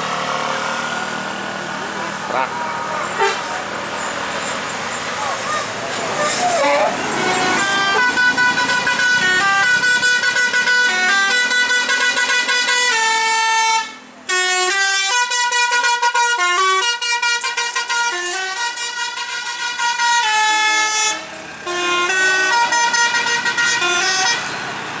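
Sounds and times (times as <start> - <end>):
musical air horn playing a tune: 5.5 - 24.5.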